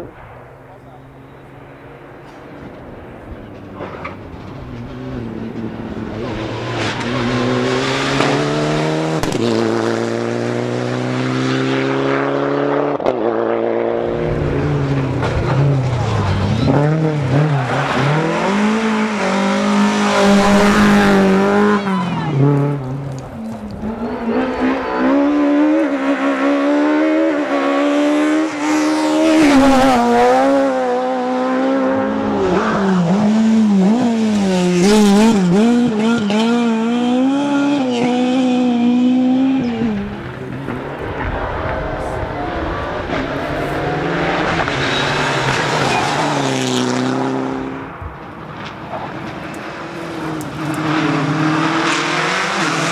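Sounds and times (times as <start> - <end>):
rally car engine revving: 3.0 - 52.9.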